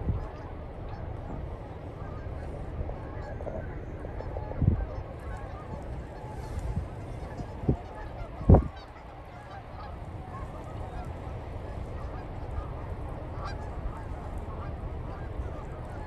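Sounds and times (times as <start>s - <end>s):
geese honking: 0.0s - 16.0s
wind rumble on microphone: 0.0s - 16.0s.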